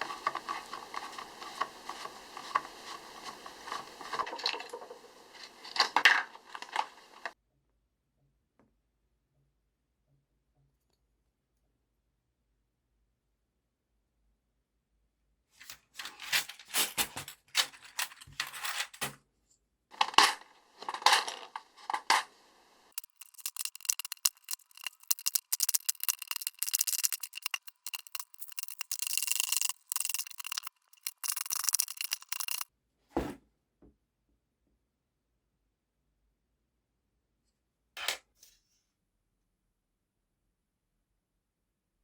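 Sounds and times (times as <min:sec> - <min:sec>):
small parts clicking and clattering: 0:00.0 - 0:07.0, 0:15.6 - 0:19.2, 0:19.9 - 0:22.3, 0:22.9 - 0:32.7.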